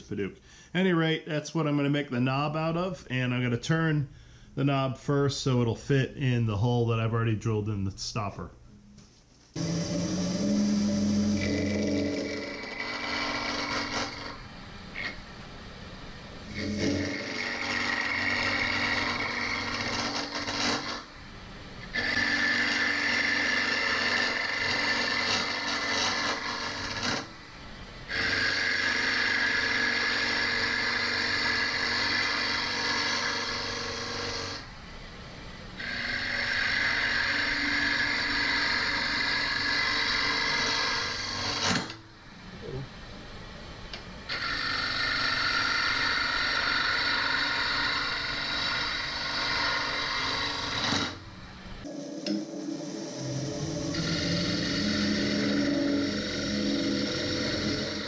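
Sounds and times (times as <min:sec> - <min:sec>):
tool scraping spinning wood: 0:09.5 - 0:14.4, 0:16.5 - 0:21.1, 0:21.8 - 0:27.3, 0:28.1 - 0:34.7, 0:35.8 - 0:42.0, 0:44.3 - 0:51.2
lathe motor hum: 0:09.6 - 0:15.2, 0:16.4 - 0:21.1, 0:21.8 - 0:34.8, 0:35.8 - 0:42.4, 0:44.3 - 0:58.0.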